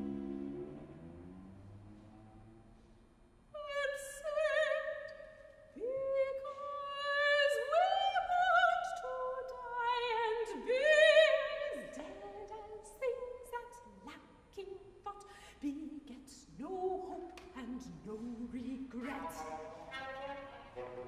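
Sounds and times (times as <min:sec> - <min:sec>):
cellos playing: 0:00.0 - 0:02.8, 0:19.0 - 0:21.0
soprano singing with vibrato: 0:03.6 - 0:21.0.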